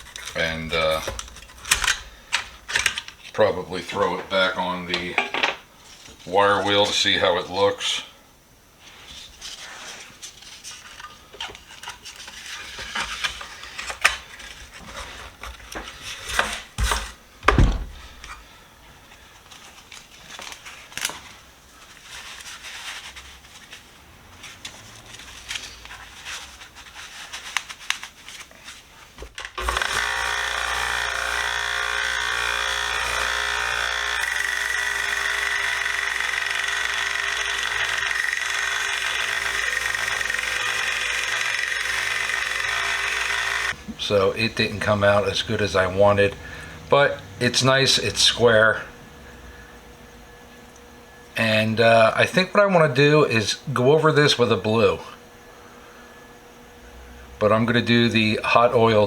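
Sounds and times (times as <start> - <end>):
wire wheel motor running: 29.4 - 52.1.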